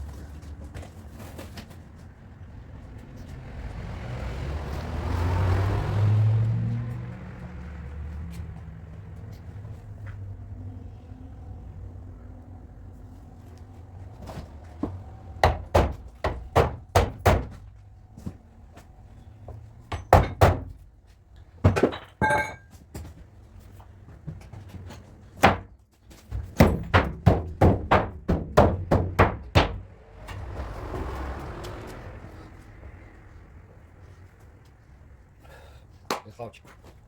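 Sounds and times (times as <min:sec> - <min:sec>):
metallic ring: 0:22.2 - 0:22.7.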